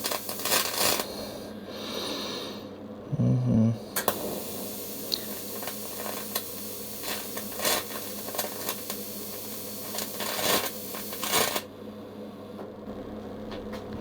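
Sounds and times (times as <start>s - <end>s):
welding hiss: 0.0s - 2.6s, 4.0s - 11.7s
low steady hum: 0.0s - 14.0s.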